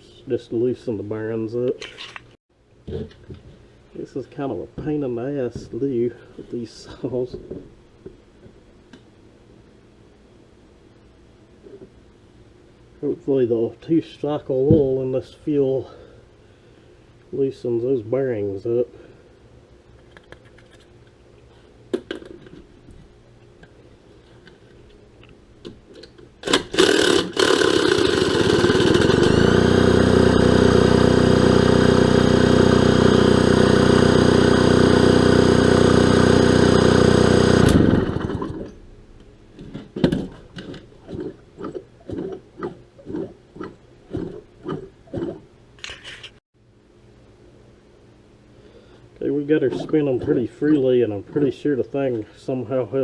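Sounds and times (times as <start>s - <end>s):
chainsaw engine whirring: 26.4s - 38.7s.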